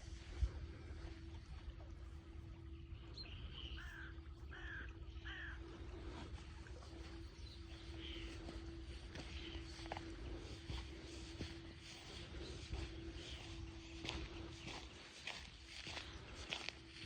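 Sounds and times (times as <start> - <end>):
faint hum: 0.0 - 17.0.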